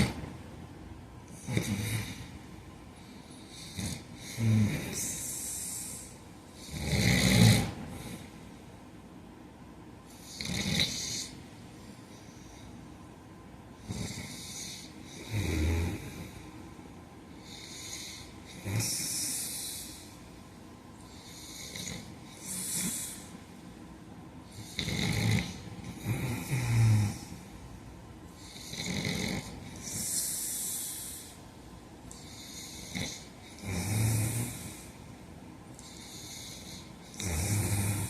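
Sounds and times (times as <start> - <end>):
man snoring: 1.3 - 2.3, 3.5 - 8.3, 10.1 - 11.4, 13.8 - 16.4, 17.4 - 20.1, 21.1 - 23.3, 24.5 - 27.4, 28.4 - 31.4, 32.1 - 35.0, 35.8 - 38.0.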